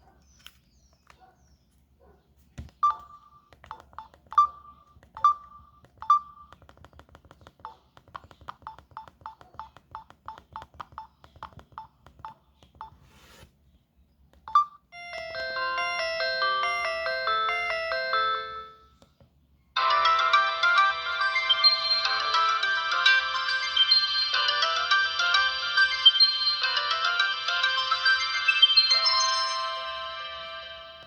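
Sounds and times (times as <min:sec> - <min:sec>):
phone keypad beeps: 0:02.8 - 0:06.6, 0:14.4 - 0:15.6.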